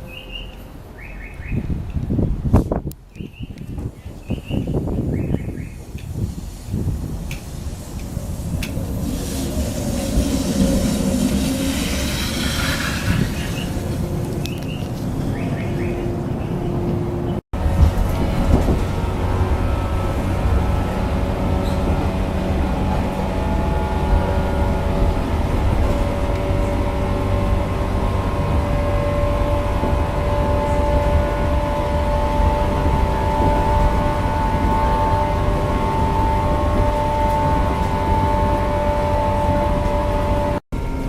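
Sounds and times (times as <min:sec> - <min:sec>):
train machinery hum: 0:00.0 - 0:41.0
train pulling in: 0:03.8 - 0:41.0.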